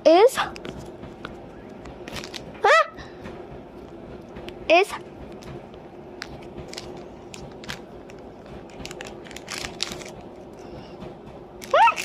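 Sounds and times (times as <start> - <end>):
packaging crinkling: 2.0 - 2.5, 6.3 - 10.2, 11.6 - 12.0.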